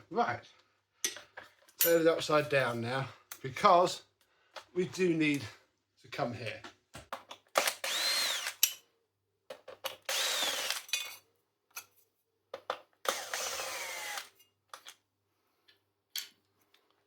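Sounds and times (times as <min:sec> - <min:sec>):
electric screwdriver whining: 0:07.6 - 0:08.6, 0:10.0 - 0:10.9, 0:13.0 - 0:14.3
parts clicking and knocking: 0:09.5 - 0:11.9, 0:12.5 - 0:13.5.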